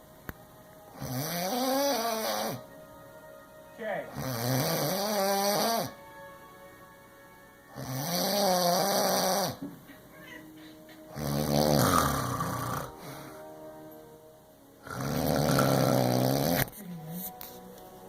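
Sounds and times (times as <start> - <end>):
loud whiny snoring: 0.9 - 2.7, 4.1 - 6.0, 7.7 - 9.6, 11.1 - 13.3, 14.8 - 16.7.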